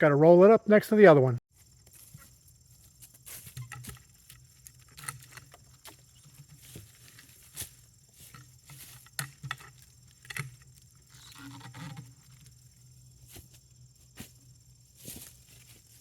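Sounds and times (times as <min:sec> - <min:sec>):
rustling: 0:01.5 - 0:16.0
log knocking and scraping: 0:01.7 - 0:13.6.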